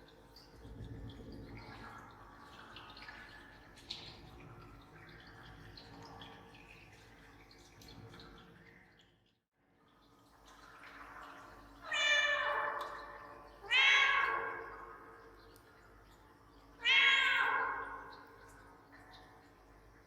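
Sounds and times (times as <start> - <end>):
cat meowing with echo: 11.8 - 15.0, 16.8 - 18.3.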